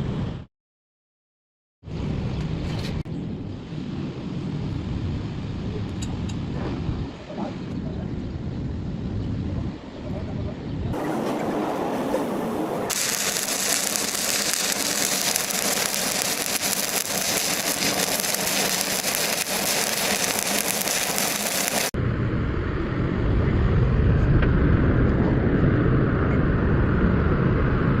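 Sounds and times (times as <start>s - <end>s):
steady low rumble: 12.7s - 28.0s
welding arc crackling hiss: 12.9s - 22.0s.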